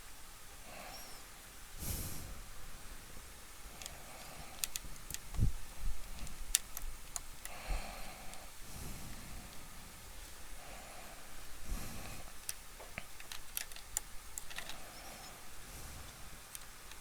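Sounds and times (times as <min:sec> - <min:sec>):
small sharp clicks of tools: 0:03.8 - 0:05.4, 0:12.4 - 0:15.3.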